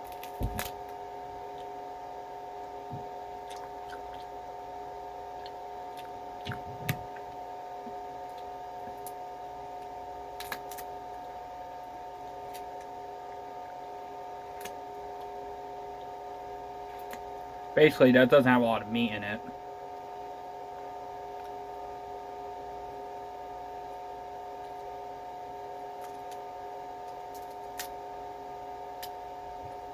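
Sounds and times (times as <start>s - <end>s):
electrical hum: 0.0s - 29.9s
crab shells cracking: 10.4s - 11.0s, 27.0s - 28.0s.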